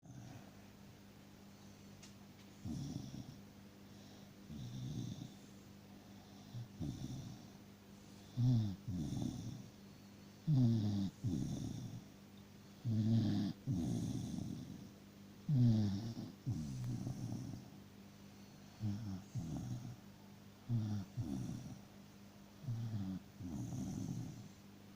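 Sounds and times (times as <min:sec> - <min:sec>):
dog snoring: 0:00.0 - 0:00.5, 0:02.5 - 0:09.8, 0:10.4 - 0:12.1, 0:12.7 - 0:14.9, 0:15.5 - 0:17.8, 0:18.6 - 0:20.0, 0:20.6 - 0:21.9, 0:22.6 - 0:24.6.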